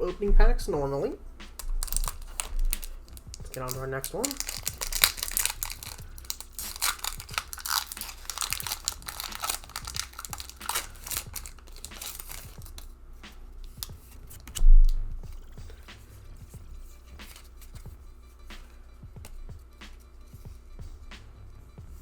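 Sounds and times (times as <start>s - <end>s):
foil wrapper crinkling and tearing: 1.6s - 12.9s, 13.6s - 14.6s, 17.0s - 17.9s.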